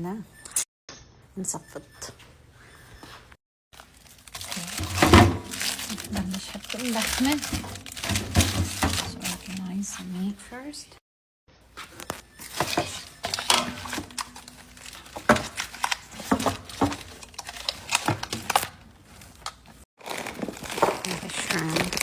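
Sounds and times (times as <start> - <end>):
packages knocking down: 3.8 - 10.0, 11.8 - 22.0
plastic bags crinkling: 3.8 - 10.5, 11.8 - 22.0.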